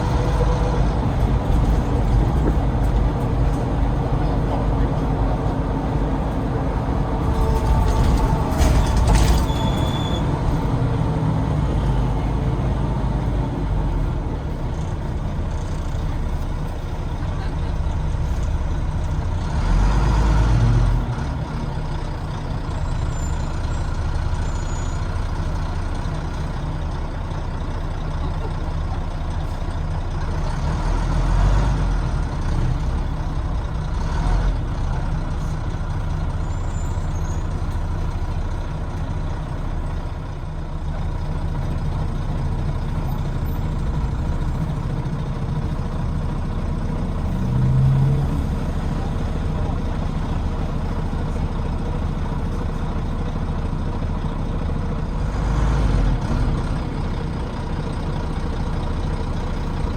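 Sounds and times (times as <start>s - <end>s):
bus diesel engine rumbling: 0.0s - 59.9s.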